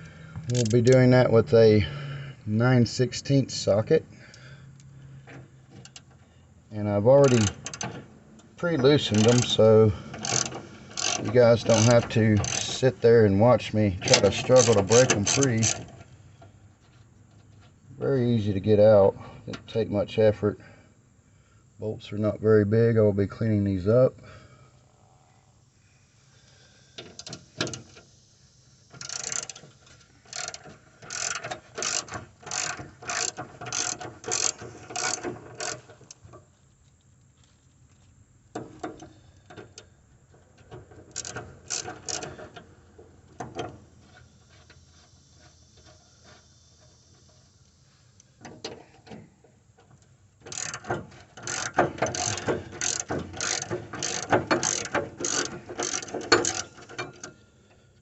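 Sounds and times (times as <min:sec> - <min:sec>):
socket ratchet clicking: 0:09.1 - 0:12.9, 0:14.1 - 0:15.9, 0:28.9 - 0:29.7, 0:30.3 - 0:35.9, 0:41.1 - 0:42.3, 0:50.5 - 0:57.3.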